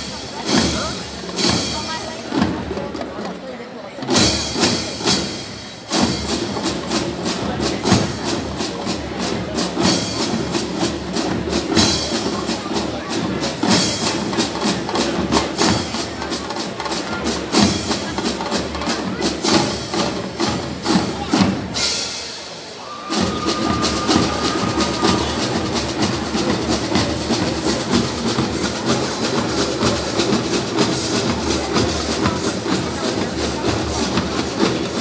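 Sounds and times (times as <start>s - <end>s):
marching band playing: 0.0s - 3.3s, 4.0s - 35.0s
sharp percussion strikes: 21.8s - 35.0s.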